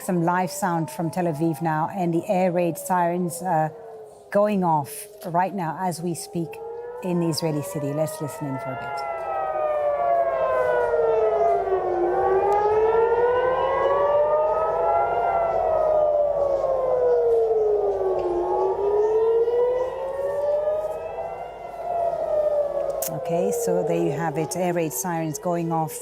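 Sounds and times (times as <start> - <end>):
air raid siren wailing: 0.0 - 26.0.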